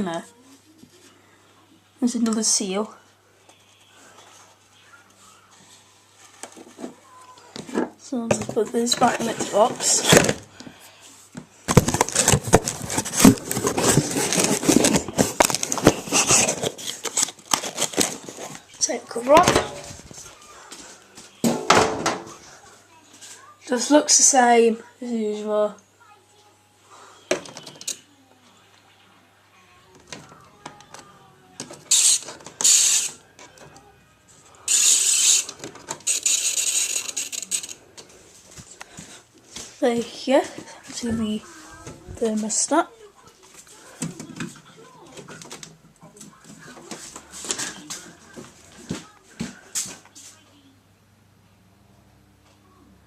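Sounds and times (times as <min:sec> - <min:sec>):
cardboard box rustling: 0:11.7 - 0:18.7.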